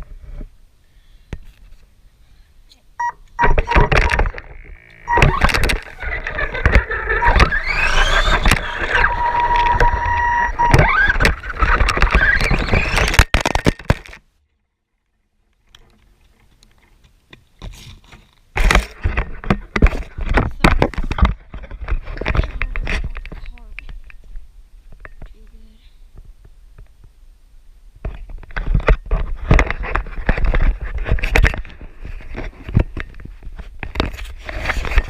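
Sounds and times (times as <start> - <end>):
small electric motor whining: 4.5 - 13.2.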